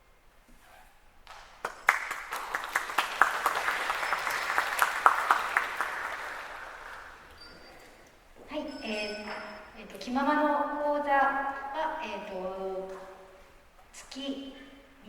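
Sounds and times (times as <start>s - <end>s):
audience applauding: 1.3s - 7.6s.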